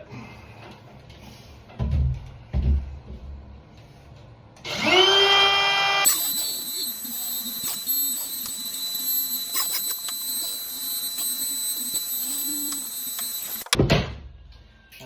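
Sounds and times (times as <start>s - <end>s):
wood router whining: 4.6s - 13.8s.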